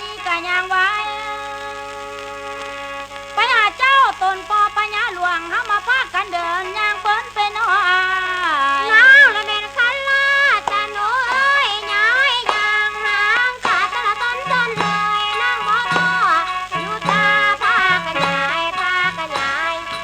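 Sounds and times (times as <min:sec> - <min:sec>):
person singing ornamented melody: 0:00.0 - 0:20.0.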